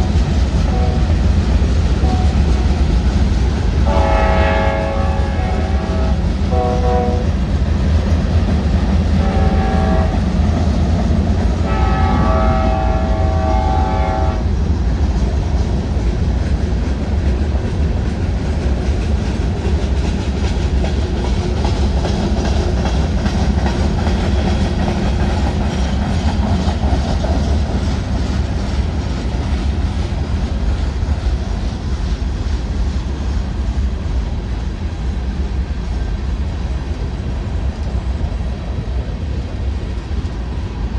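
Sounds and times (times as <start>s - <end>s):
diesel locomotive horn: 0.0s - 1.3s, 1.9s - 3.0s, 3.8s - 7.4s, 9.1s - 10.5s, 11.5s - 14.5s
freight train rumbling past: 0.0s - 40.9s.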